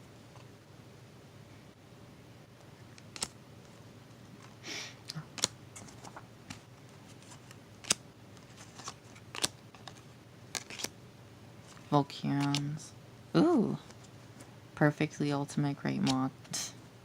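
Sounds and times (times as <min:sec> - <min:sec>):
cards sliding rustle: 0:02.9 - 0:03.8, 0:05.3 - 0:11.0, 0:11.6 - 0:12.8
cards clicking and tapping: 0:05.3 - 0:10.9, 0:11.7 - 0:12.8.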